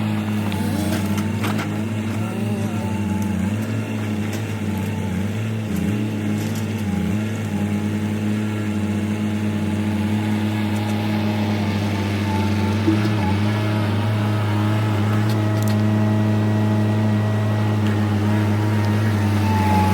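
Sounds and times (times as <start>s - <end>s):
heavy diesel engine running: 0.0s - 19.9s.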